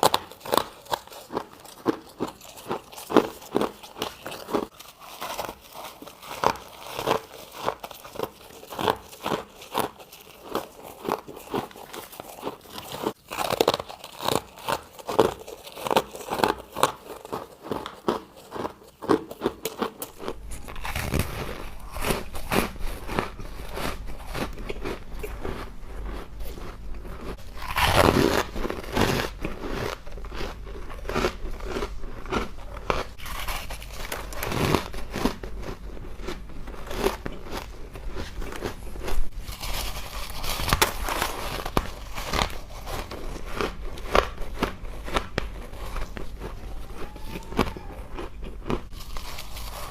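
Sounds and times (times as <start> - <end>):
person chewing ice crunches: 0.0 - 49.9
low steady hum: 20.0 - 49.9.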